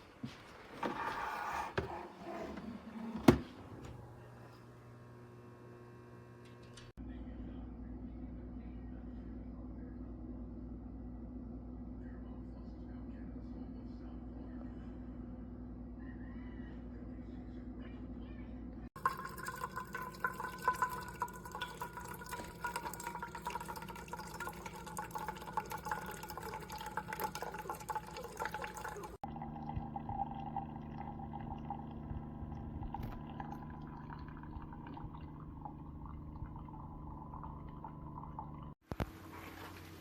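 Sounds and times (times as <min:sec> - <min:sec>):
liquid pouring into container: 0:19.0 - 0:38.8.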